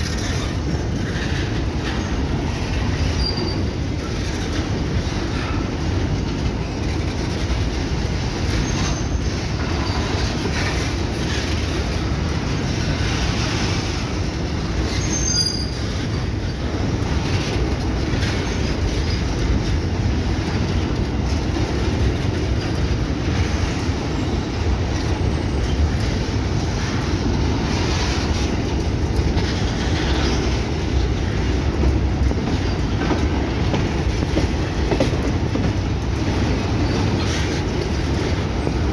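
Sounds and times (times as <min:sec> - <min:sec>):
freight train rumbling past: 0:00.0 - 0:38.9
rail clatter: 0:00.0 - 0:38.9.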